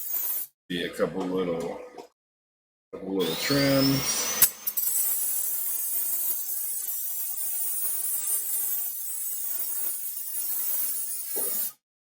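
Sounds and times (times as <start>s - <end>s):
rotary tool grinding metal: 0.0s - 0.5s, 3.2s - 11.8s.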